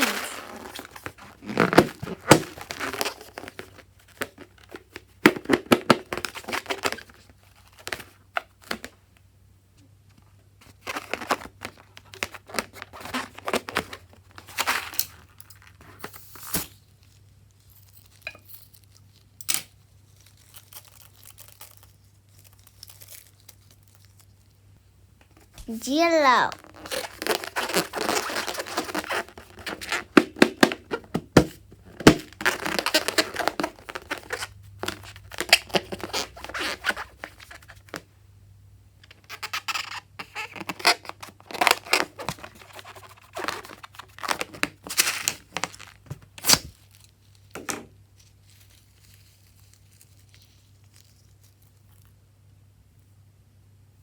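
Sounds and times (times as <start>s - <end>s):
crinkling and tearing: 0.0s - 5.1s, 17.9s - 24.6s, 26.5s - 30.7s, 31.8s - 38.0s, 48.2s - 52.2s.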